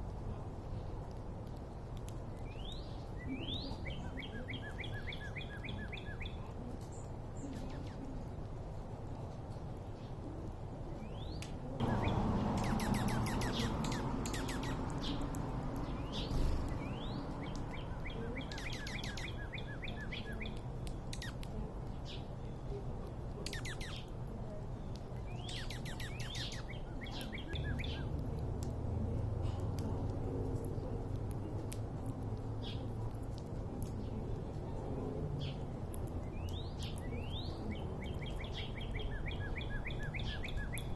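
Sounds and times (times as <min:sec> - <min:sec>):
songbirds chirping: 0:00.0 - 0:40.9
steady low rumble: 0:11.8 - 0:18.8.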